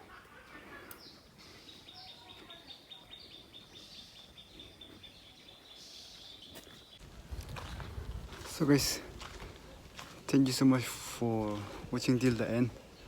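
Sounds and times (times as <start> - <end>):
bird chirps: 0.7 - 7.0.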